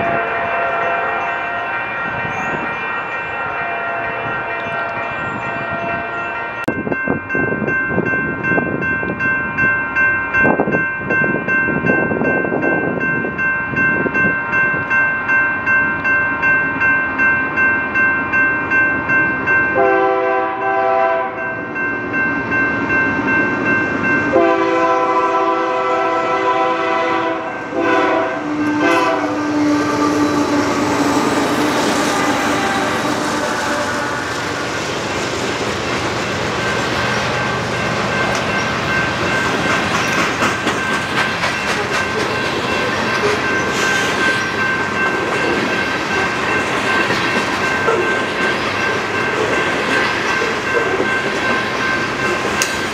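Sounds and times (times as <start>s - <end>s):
train horn blasts: 0.0s - 1.8s, 19.8s - 21.6s, 24.3s - 34.6s
crossing bell ringing: 0.0s - 52.9s
train wheels on rails: 0.0s - 52.9s.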